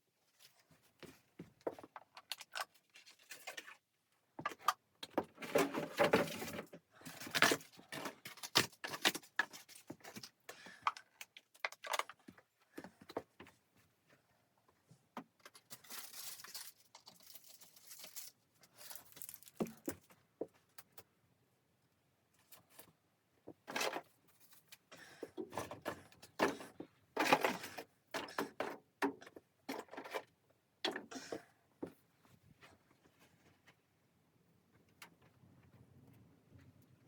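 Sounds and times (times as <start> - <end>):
rustling and crinkling: 0.0 - 21.1, 22.3 - 30.4, 31.8 - 37.0.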